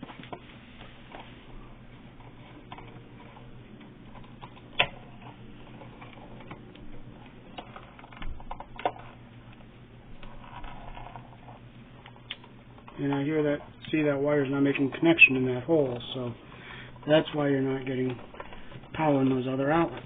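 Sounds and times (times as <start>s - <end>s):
electrical arcing snaps and crackling: 17.0s - 20.0s.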